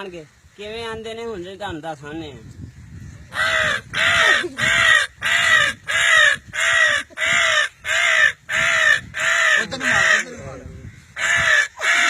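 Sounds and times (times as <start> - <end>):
person imitating crow caws: 3.3 - 10.5, 11.2 - 12.0.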